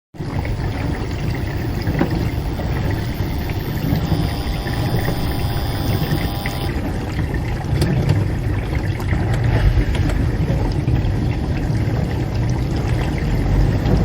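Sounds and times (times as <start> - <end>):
faint steady hum: 0.2 - 7.8
dishwasher pump rumbling: 0.2 - 14.0
water churning: 0.2 - 14.0
small clicks: 1.6 - 6.7.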